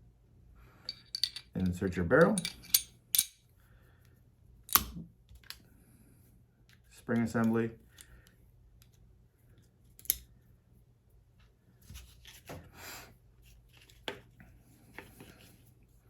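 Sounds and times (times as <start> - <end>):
pistol parts clicking and rubbing: 0.9 - 3.5, 4.7 - 5.6, 9.9 - 10.3.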